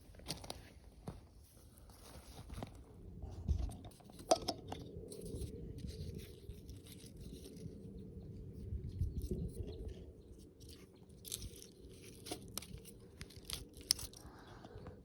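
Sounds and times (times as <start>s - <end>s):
dry leaves crackling underfoot: 10.6s - 14.3s
twig snapping: 11.2s - 14.3s.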